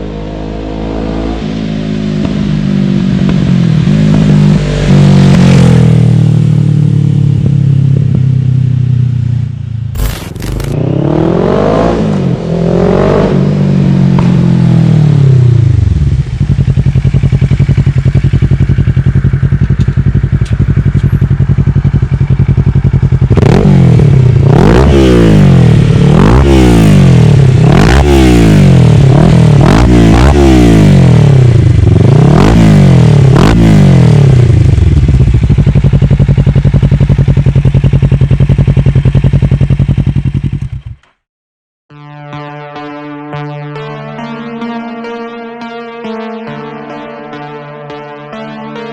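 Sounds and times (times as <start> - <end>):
motorcycle engine revving: 0.0 - 41.0.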